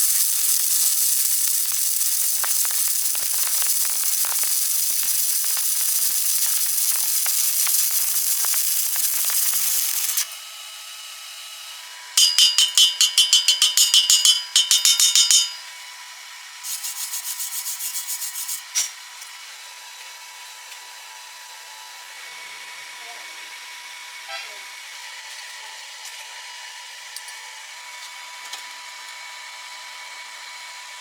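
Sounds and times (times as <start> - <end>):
welding arc crackling and hissing: 0.0 - 10.4, 12.2 - 15.6, 16.6 - 18.9
ringing metal strokes: 12.2 - 15.7.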